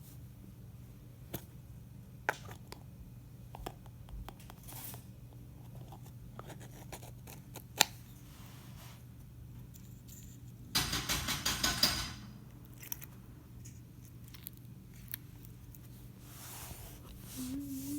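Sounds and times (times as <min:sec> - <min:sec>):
low steady hum: 0:12.2 - 0:17.9.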